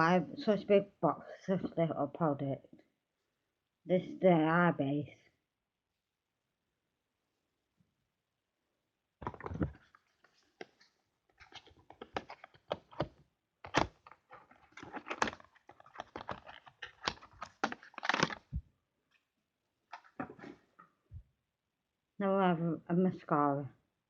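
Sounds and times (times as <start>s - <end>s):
packaging taps and clicks: 9.2s - 18.6s.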